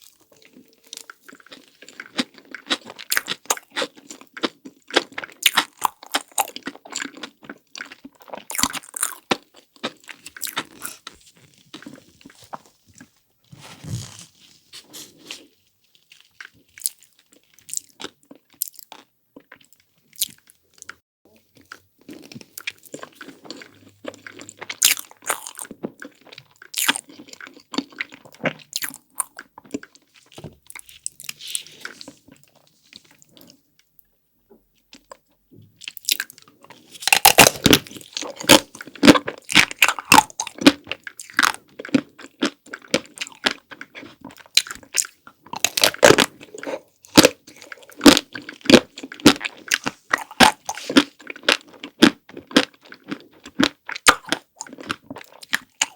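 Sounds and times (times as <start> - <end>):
chewing: 0.0 - 34.0, 34.9 - 55.9
crunchy bites into ice cream: 0.9 - 15.6, 22.0 - 32.4, 35.8 - 55.9.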